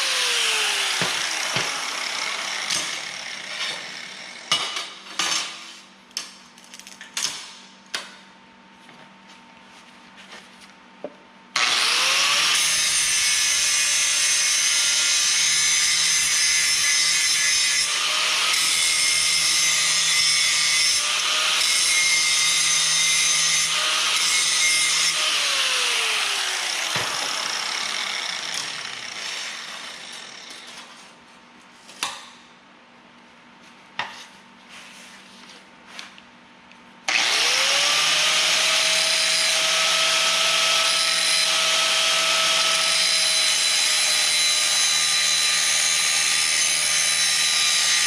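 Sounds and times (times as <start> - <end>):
angle grinder grinding steel: 0.0 - 4.5, 11.6 - 30.8.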